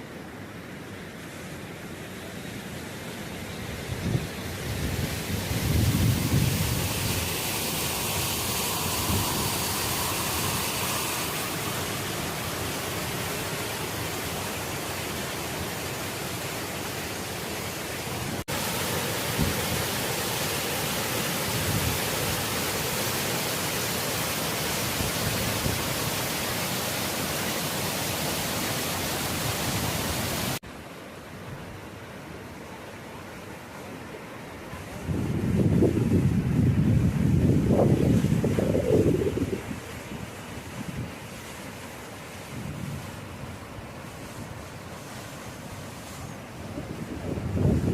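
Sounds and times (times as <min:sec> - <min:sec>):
waterfall rushing: 0:02.8 - 0:30.6.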